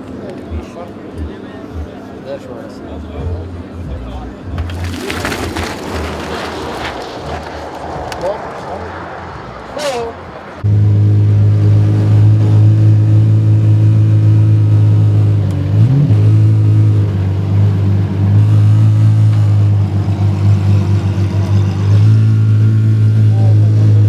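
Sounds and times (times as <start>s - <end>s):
car engine idling loudly: 5.8s - 24.0s.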